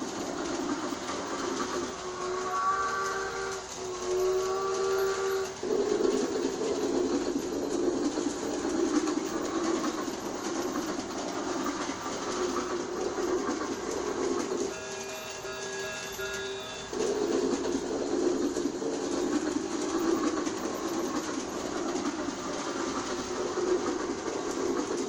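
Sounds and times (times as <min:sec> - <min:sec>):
toy train running: 0:00.0 - 0:25.0
toy train whistle: 0:01.9 - 0:05.7, 0:14.5 - 0:17.8.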